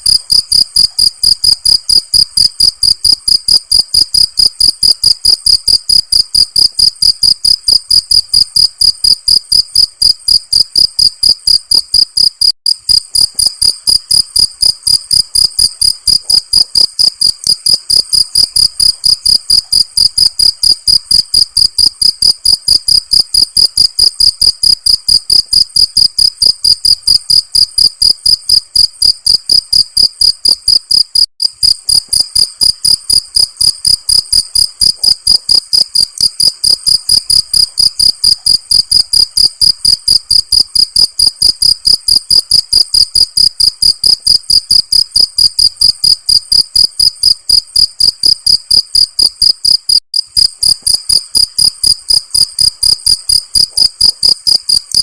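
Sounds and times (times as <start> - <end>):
cricket chirping: 0.0 - 55.0.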